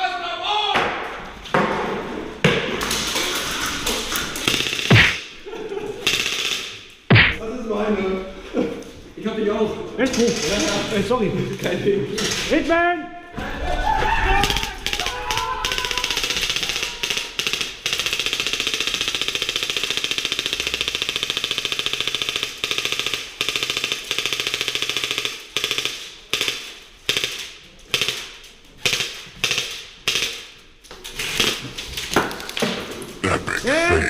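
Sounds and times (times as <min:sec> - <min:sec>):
airsoft guns firing: 0:16.0 - 0:27.4.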